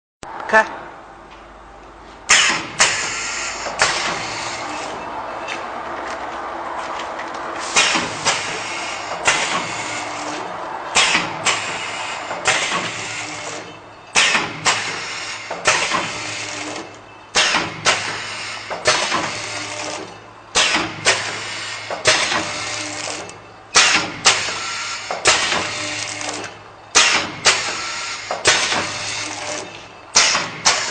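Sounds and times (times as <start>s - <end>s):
packing machine clack: 11.0s - 30.9s
packing machine hiss: 27.0s - 30.9s.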